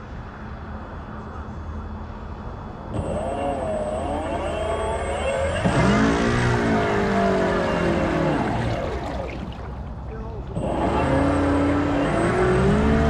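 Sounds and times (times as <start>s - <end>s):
model boat motors running: 2.9s - 13.0s
model boat passing by: 3.2s - 13.0s.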